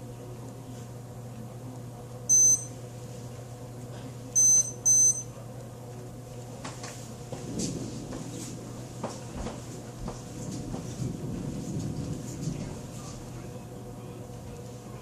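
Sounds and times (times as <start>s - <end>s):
low electrical hum: 0.0s - 15.0s
high electronic beeps: 2.3s - 2.7s, 4.4s - 5.3s.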